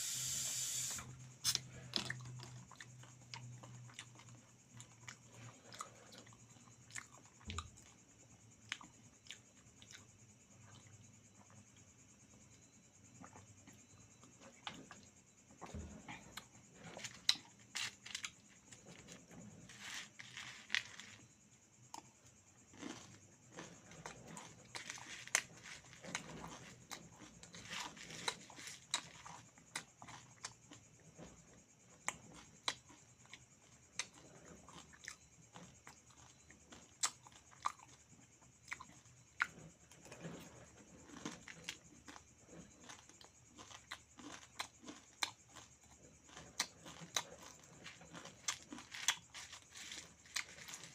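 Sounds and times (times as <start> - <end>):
person chewing food: 0.4 - 11.8, 13.2 - 50.9
soft crinkling: 16.8 - 21.5, 46.3 - 50.9.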